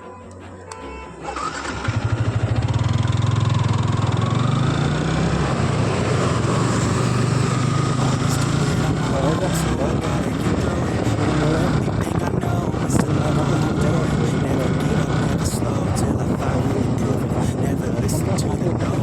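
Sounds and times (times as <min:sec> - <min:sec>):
vehicle engine starting and running: 0:00.0 - 0:19.0.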